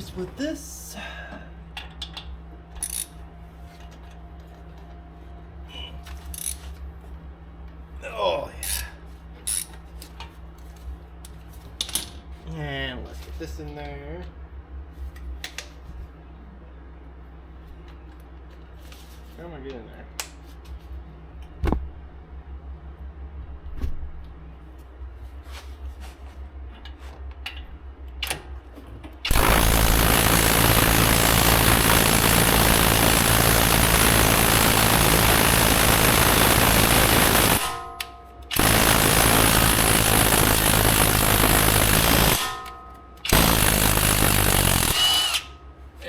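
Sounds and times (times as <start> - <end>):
impact wrench hammering: 29.3 - 45.5.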